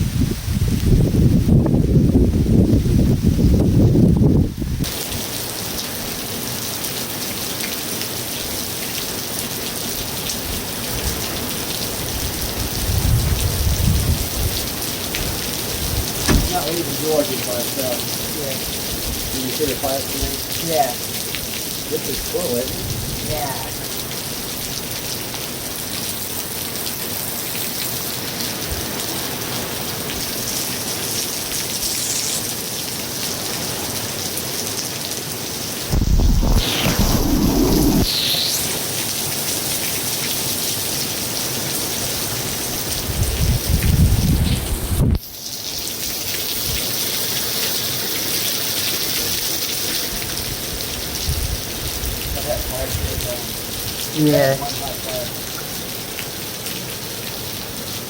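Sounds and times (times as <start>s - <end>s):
heavy rain pattering: 4.9s - 58.0s
thunder rumble: 15.9s - 17.0s, 35.9s - 39.2s.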